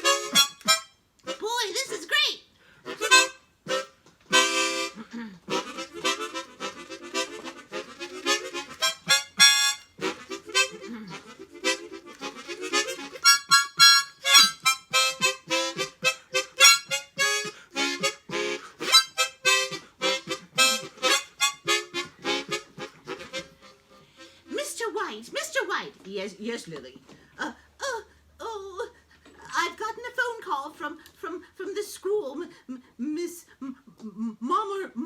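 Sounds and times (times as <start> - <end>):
harmonica playing a tune: 0.0 - 1.7, 2.8 - 25.0.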